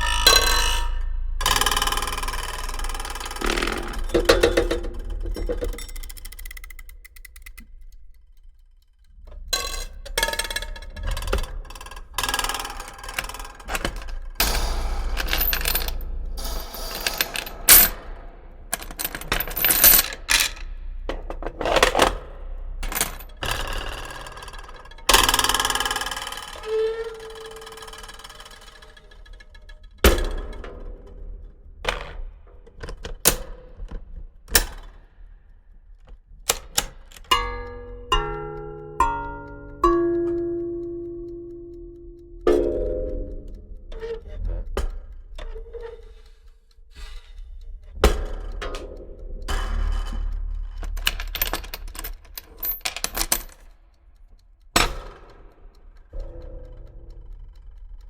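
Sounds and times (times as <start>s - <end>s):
gear mechanism clicks: 0.0s - 58.0s
steady ringing tones: 37.3s - 45.3s, 56.0s - 58.0s
low hum: 37.3s - 52.6s, 56.1s - 58.0s.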